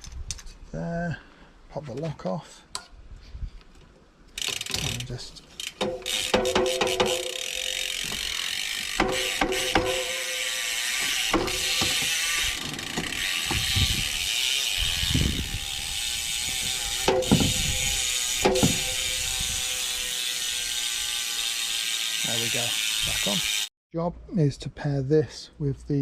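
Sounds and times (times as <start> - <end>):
bicycle freehub ratchet ticking: 4.4 - 23.7
sharp metallic knocks: 5.8 - 8.2, 9.0 - 10.4, 11.0 - 12.2, 17.0 - 17.8, 18.4 - 19.0.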